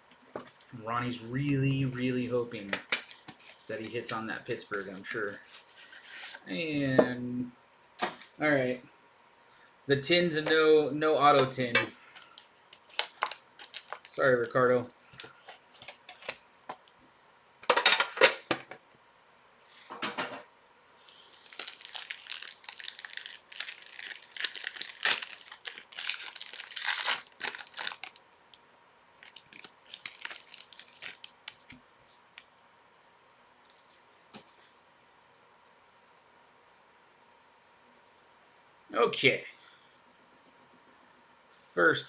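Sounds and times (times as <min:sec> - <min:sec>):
wrappers tearing and crinkling: 0:02.7 - 0:05.7, 0:12.2 - 0:14.2, 0:21.0 - 0:28.6, 0:29.2 - 0:31.7.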